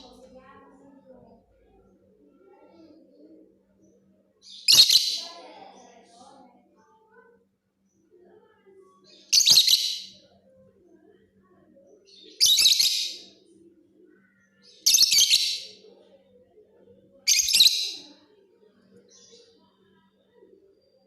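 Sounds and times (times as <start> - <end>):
lovebird chattering chirps: 17.3 - 18.0.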